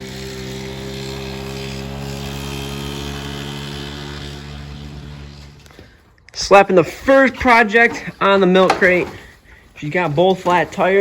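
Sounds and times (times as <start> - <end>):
small engine running: 0.0 - 6.1.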